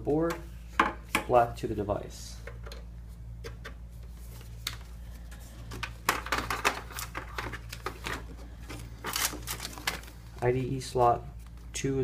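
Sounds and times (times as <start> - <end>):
steady low hum: 0.0 - 12.0
cable clicking and rustling: 4.4 - 10.2.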